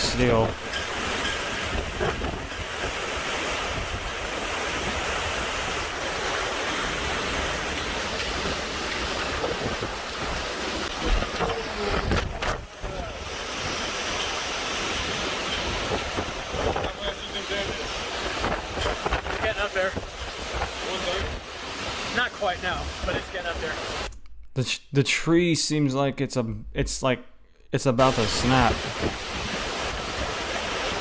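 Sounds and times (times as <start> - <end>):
strong wind buffeting microphone: 0.0 - 22.1, 28.6 - 31.0.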